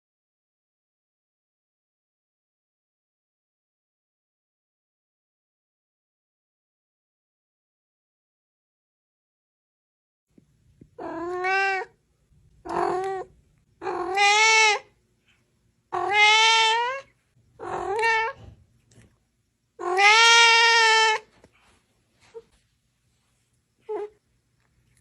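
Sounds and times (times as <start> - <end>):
cat meowing: 11.0 - 12.0, 12.6 - 14.9, 15.9 - 18.6, 19.8 - 21.3, 23.9 - 24.2.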